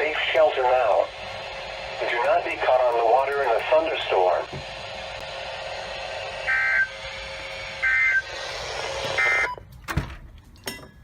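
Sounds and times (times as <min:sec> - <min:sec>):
radio hiss: 0:00.0 - 0:07.0.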